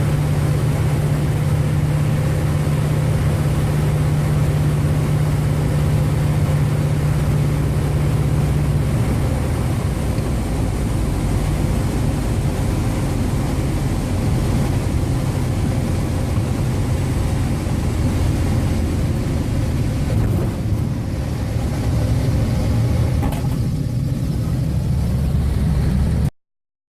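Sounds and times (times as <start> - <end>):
piston engine droning: 0.0 - 26.3.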